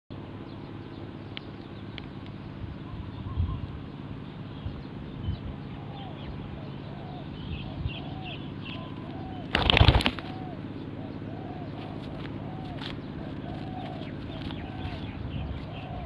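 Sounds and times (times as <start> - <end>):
small birds chirping: 0.2 - 16.0
dove cooing: 5.5 - 16.0.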